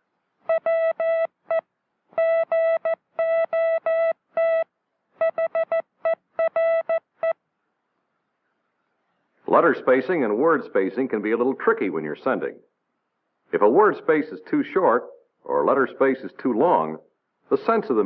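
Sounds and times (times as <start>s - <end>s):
morse code beeps: 0.5s - 7.4s.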